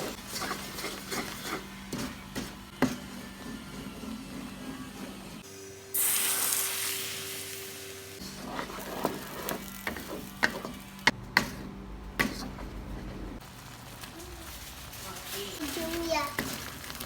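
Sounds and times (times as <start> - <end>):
utensil scraping a pan: 0.0 - 5.4, 8.2 - 10.8
hot oil sizzling: 5.4 - 11.2.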